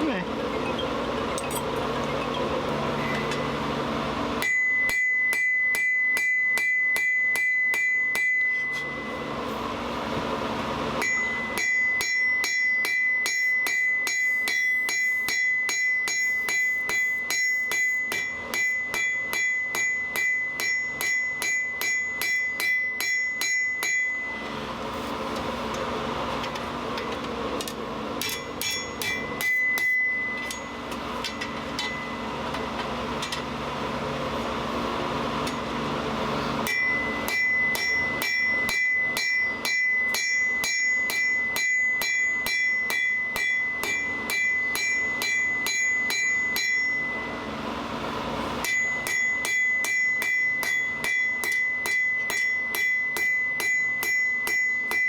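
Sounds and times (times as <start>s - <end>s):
hammer blows on steel anvil: 28.2s - 32.2s, 36.6s - 47.4s, 48.6s - 55.0s.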